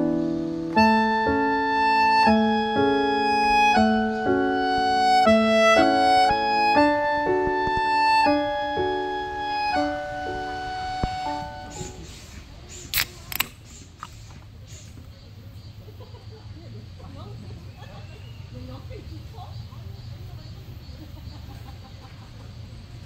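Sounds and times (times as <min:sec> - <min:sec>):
gentle piano and strings melody: 0:00.0 - 0:12.3.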